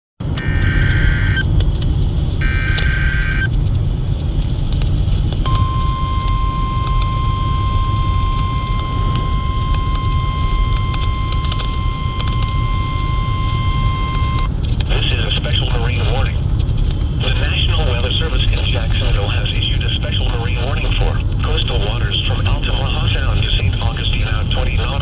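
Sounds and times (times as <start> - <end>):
radio hum and static: 0.2 - 25.0
steady warning alarm tone: 0.3 - 1.5, 2.4 - 3.5, 5.4 - 16.4.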